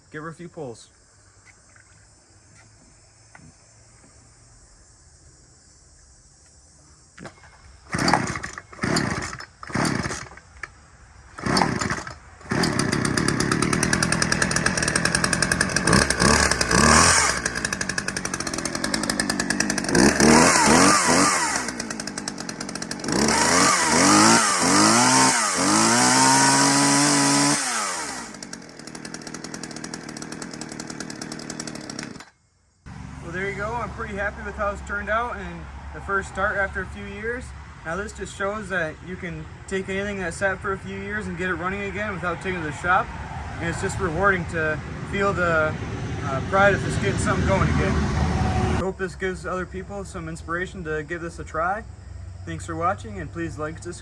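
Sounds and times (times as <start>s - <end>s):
chainsaw revving and idling: 7.2s - 10.4s, 11.4s - 32.3s, 45.1s - 48.8s
chainsaw pull-starting: 7.2s - 10.7s, 11.4s - 32.4s.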